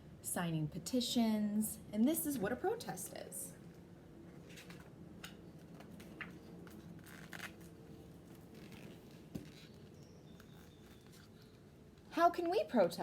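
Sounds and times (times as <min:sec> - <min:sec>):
low room hum: 0:00.0 - 0:13.0
paper pages rustling: 0:05.6 - 0:11.7.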